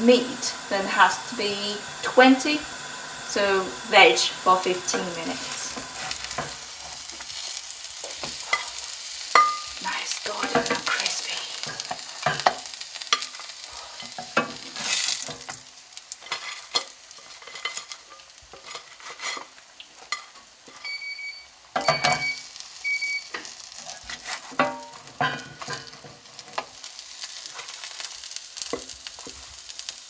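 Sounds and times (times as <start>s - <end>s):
dumplings sizzling in oil: 0.0s - 30.0s
short electronic beeps: 20.8s - 23.3s.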